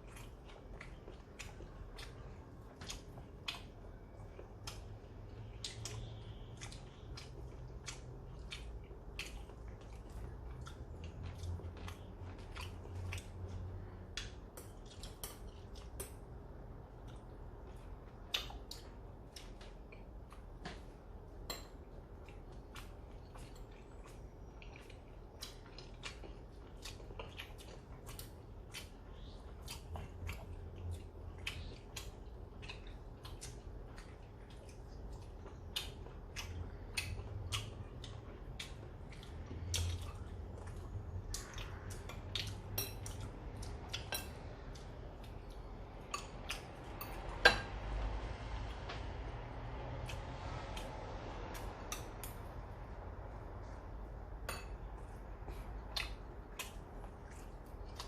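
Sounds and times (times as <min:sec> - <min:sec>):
chopsticks and spoons clinking bowls: 0:42.7 - 0:43.2, 0:46.0 - 0:47.8.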